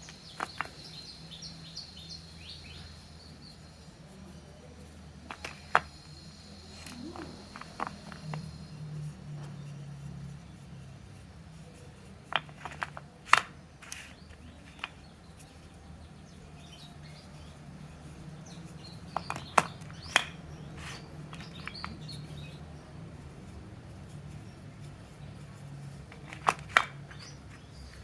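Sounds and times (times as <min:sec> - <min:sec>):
sharp clicks and taps: 0:00.0 - 0:01.1, 0:12.2 - 0:15.5, 0:18.8 - 0:22.5, 0:26.0 - 0:28.0.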